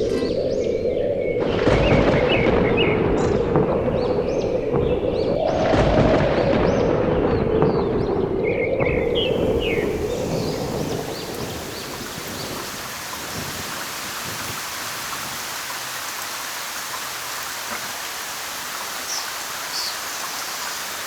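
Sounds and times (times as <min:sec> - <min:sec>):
steady hiss: 0:09.0 - 0:21.0.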